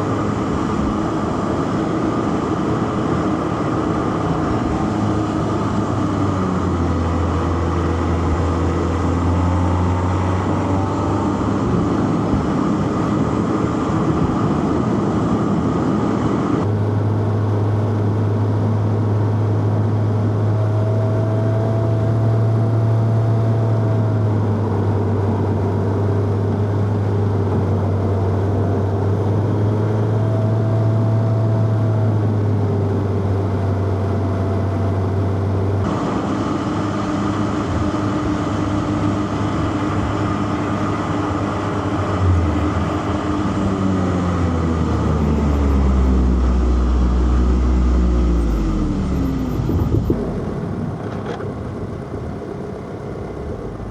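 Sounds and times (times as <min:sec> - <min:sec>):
car engine running: 0:00.0 - 0:20.4, 0:35.3 - 0:53.9
road and tyre noise: 0:00.0 - 0:53.9.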